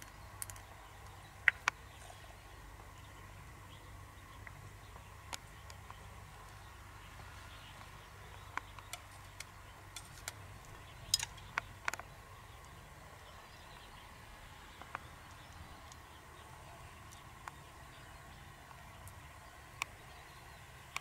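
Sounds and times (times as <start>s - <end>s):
light clicks of small hard objects: 0.0s - 1.9s, 7.8s - 12.8s
faint steady hum: 0.0s - 21.0s.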